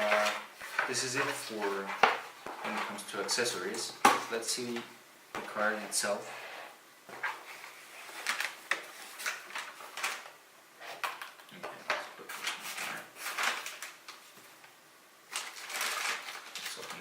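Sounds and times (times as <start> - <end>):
packaging rustling and scraping: 0.0 - 3.1, 6.0 - 14.6, 15.3 - 17.0.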